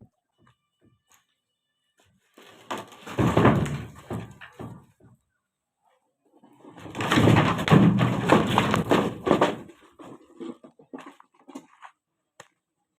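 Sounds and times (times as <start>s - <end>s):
plywood scraping and knocking: 2.4s - 5.2s, 6.5s - 12.0s.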